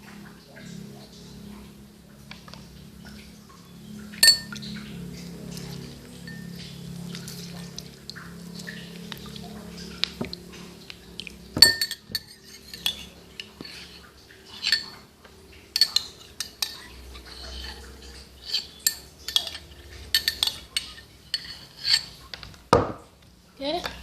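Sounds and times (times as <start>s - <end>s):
metal spoon clinking on glass: 4.2s - 4.6s, 11.6s - 13.7s, 14.5s - 15.0s, 15.8s - 17.8s, 18.4s - 22.1s.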